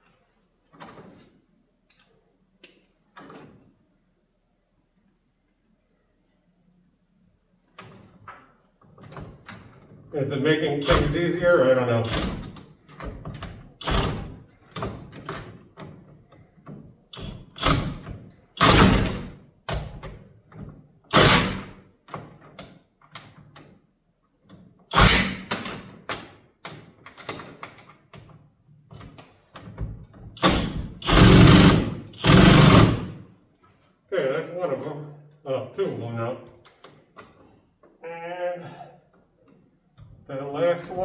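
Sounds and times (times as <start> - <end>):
impact gun bursts: 10.8 - 12.4, 18.6 - 19.3, 21.1 - 21.8, 30.4 - 33.2
metal clicks and clanks: 17.2 - 19.3, 30.4 - 33.2.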